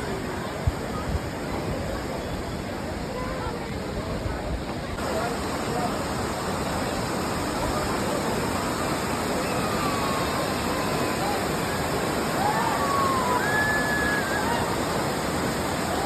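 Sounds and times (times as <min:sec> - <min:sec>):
waterfall rushing: 0:05.0 - 0:16.0.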